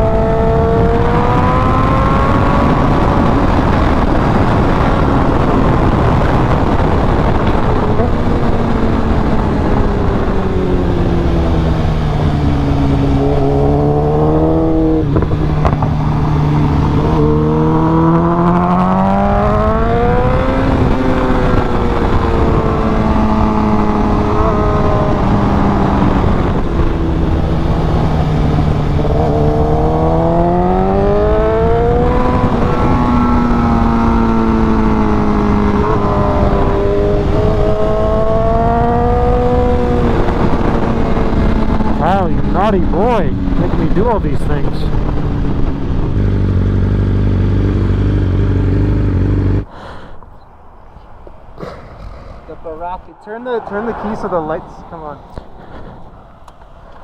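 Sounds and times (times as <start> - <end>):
motorcycle engine revving: 0.0 - 49.7.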